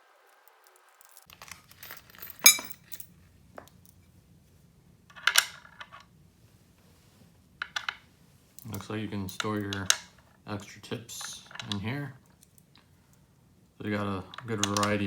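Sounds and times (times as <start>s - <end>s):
metal clink with brief ring: 2.3s - 3.0s.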